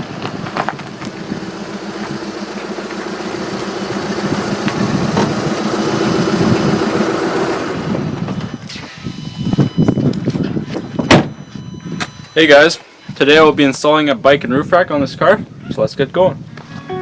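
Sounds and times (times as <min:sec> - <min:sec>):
car engine running: 0:00.0 - 0:08.6.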